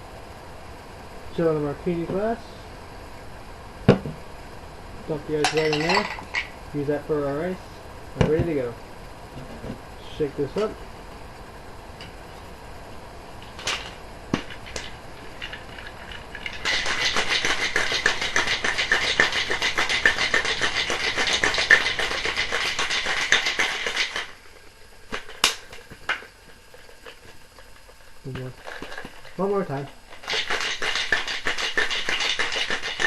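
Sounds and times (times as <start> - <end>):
ice rattling in cocktail shaker: 5.6 - 6.5, 14.6 - 24.4, 30.1 - 33.0.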